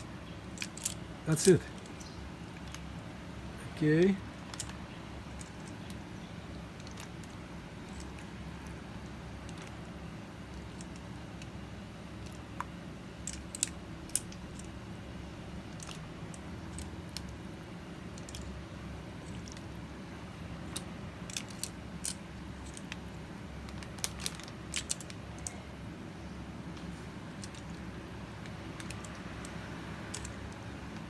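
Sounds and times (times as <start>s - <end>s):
steady low hum: 0.0s - 31.0s
plastic bag crinkling: 6.7s - 8.8s, 21.2s - 25.5s.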